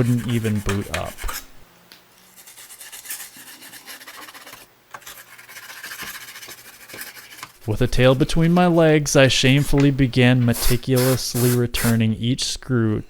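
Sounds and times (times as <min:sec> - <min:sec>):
scratchy rubbing and rasping: 0:00.0 - 0:01.6, 0:02.2 - 0:08.8.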